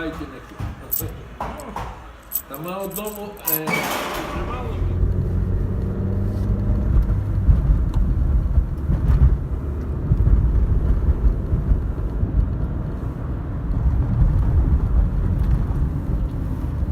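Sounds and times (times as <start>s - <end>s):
car road and wind rumble: 4.2s - 16.9s.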